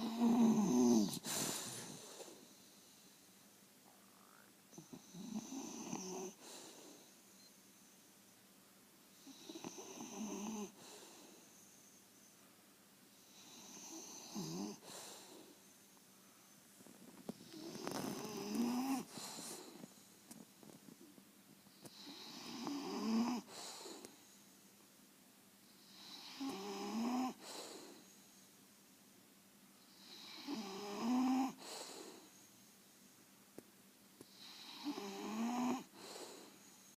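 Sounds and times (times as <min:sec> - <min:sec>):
rasping snores: 0:00.0 - 0:02.3, 0:04.8 - 0:06.8, 0:09.2 - 0:11.0, 0:13.3 - 0:14.9, 0:17.4 - 0:19.8, 0:21.8 - 0:24.1, 0:25.8 - 0:28.0, 0:29.9 - 0:32.2, 0:34.3 - 0:36.6
quiet breathing: 0:00.0 - 0:24.9, 0:25.6 - 0:29.1, 0:29.7 - 0:33.4, 0:34.2 - 0:37.0.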